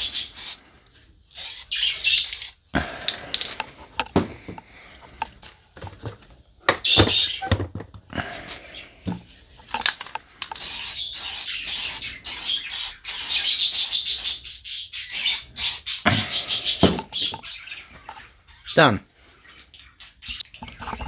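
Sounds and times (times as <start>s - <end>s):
aerosol can spraying bursts: 0.0s - 0.6s, 1.3s - 2.7s, 10.5s - 14.5s, 15.1s - 16.0s.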